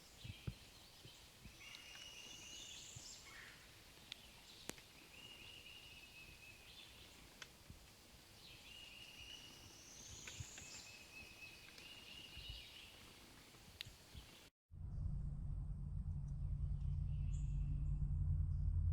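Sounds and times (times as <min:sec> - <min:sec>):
distant bird trilling: 0:01.5 - 0:07.3
faint clicks: 0:04.0 - 0:05.1, 0:07.1 - 0:08.0, 0:10.0 - 0:12.0.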